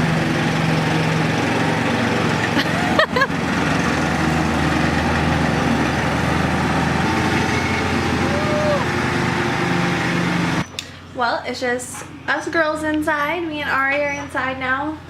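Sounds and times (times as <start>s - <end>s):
riding lawn mower engine running: 0.0s - 11.2s.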